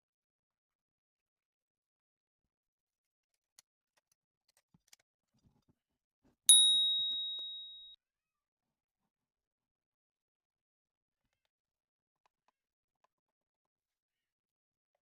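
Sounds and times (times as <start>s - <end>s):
bright ding: 6.5s - 8.0s.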